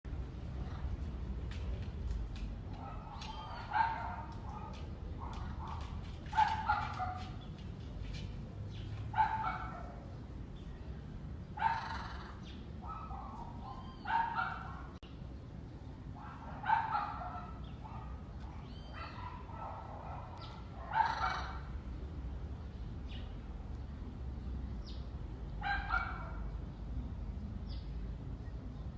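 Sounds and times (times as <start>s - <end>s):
animal harsh calls: 11.6s - 12.4s, 20.9s - 21.6s.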